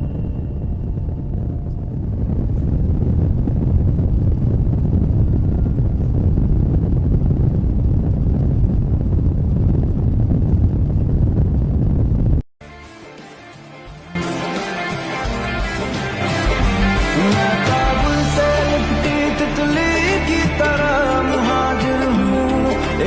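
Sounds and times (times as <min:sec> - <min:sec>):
jet engine roar in cabin: 0:00.0 - 0:12.4.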